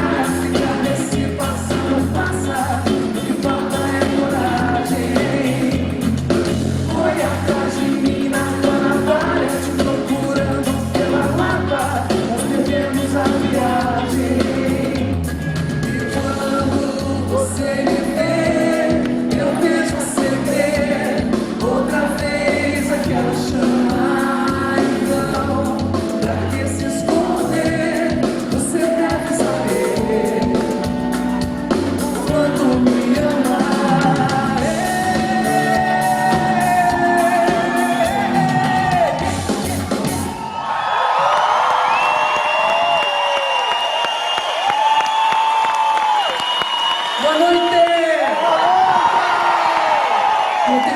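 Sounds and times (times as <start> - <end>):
live pop band playing: 0.0 - 40.6.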